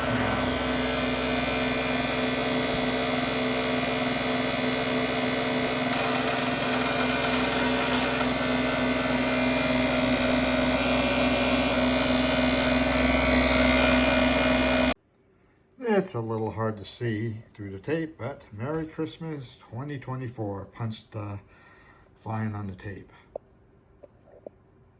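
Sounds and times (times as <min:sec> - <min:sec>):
steady motor hum: 0:00.0 - 0:15.0
tape punch mechanical buzz: 0:00.0 - 0:15.0.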